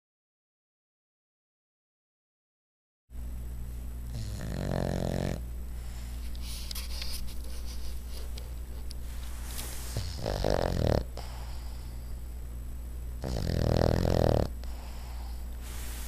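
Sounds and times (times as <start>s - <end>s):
dog snoring: 4.1s - 5.4s, 9.9s - 11.9s, 13.2s - 15.4s
dog snuffling breaths: 4.1s - 12.2s, 13.2s - 16.0s.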